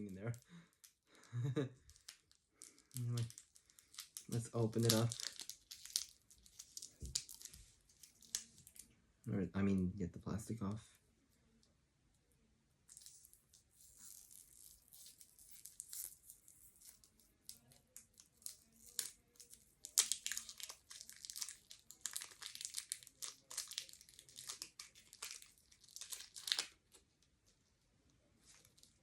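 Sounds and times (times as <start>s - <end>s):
plastic packaging crinkling: 0.0s - 9.0s, 12.9s - 27.1s.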